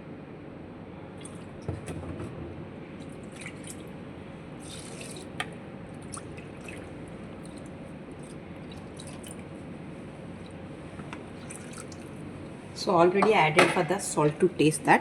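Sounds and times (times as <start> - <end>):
water dripping and trickling: 3.1 - 3.9, 4.6 - 9.5, 11.4 - 12.2.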